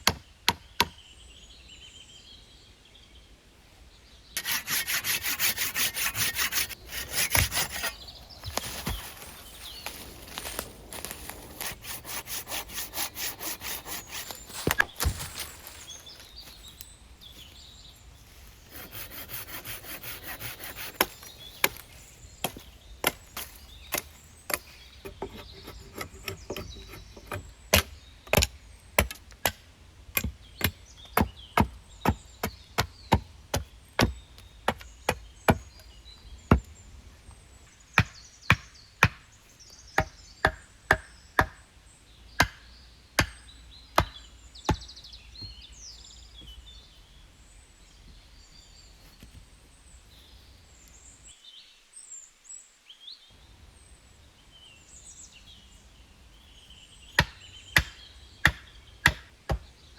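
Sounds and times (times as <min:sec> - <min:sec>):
hand saw cutting wood: 0:04.4 - 0:16.5, 0:18.6 - 0:24.0, 0:25.1 - 0:27.5
chopping blows on wood: 0:38.0 - 0:39.2, 0:42.4 - 0:43.4, 0:44.0 - 0:44.9.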